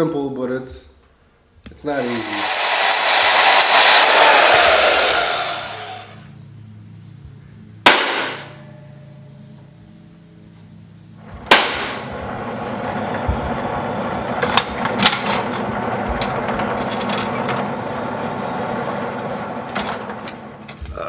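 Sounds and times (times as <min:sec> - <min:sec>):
power tool working metal: 0:02.0 - 0:06.3
sharp metallic clank: 0:07.9 - 0:08.9.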